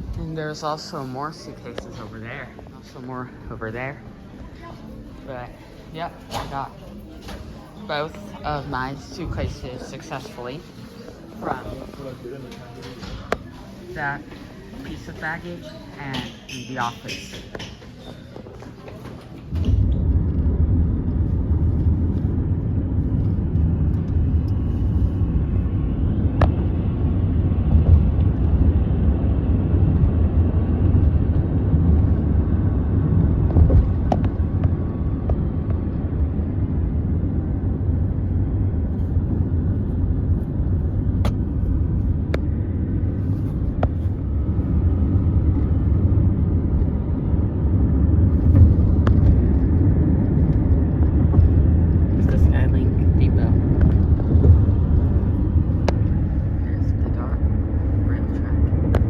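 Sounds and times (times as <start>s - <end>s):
vehicle rumbling in motion: 19.4s - 59.0s.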